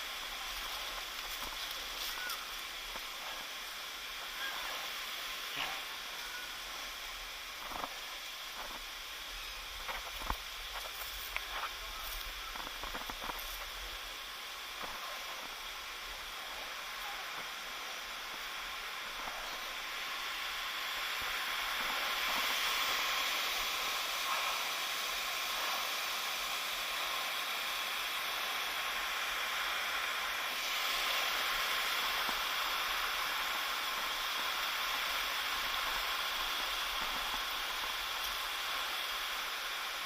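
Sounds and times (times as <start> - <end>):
waterfall rushing: 0.0 - 40.0.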